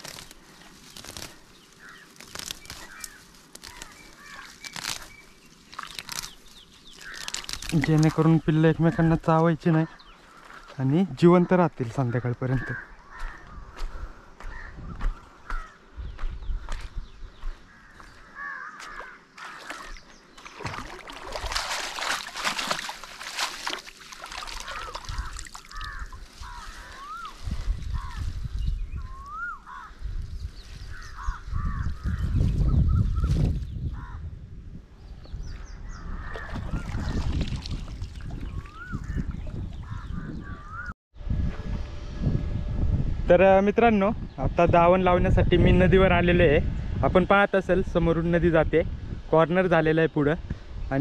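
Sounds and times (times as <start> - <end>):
dry grass rustling: 0.0 - 34.2
rustling and sloshing in water: 19.4 - 27.5, 36.3 - 39.7.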